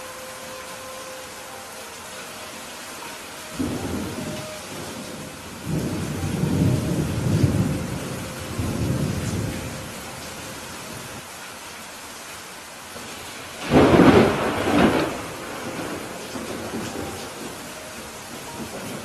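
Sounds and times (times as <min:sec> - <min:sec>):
steady rain: 0:00.0 - 0:19.0
thunder rumbling: 0:03.5 - 0:11.2, 0:13.6 - 0:19.0.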